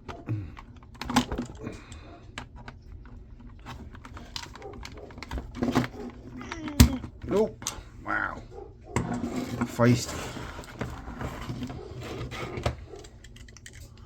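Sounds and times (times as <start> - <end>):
metal scraping: 8.9 - 13.1.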